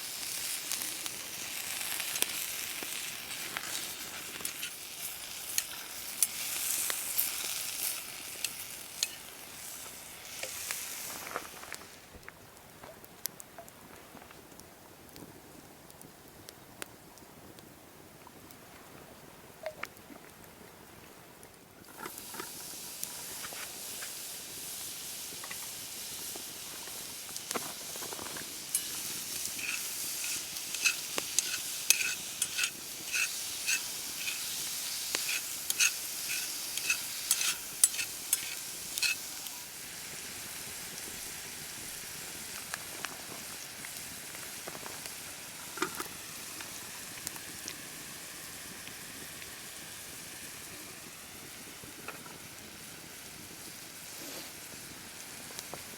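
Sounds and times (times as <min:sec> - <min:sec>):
food sizzling in a pan: 0:00.0 - 0:12.1, 0:21.9 - 0:55.9
sharp stirring clicks: 0:28.7 - 0:39.2.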